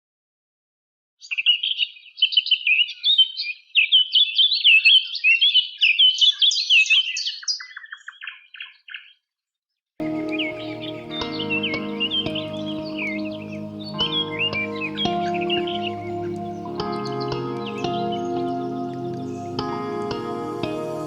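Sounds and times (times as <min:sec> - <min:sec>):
birds chirping: 0:01.2 - 0:09.2, 0:10.0 - 0:21.0
music: 0:10.0 - 0:21.0.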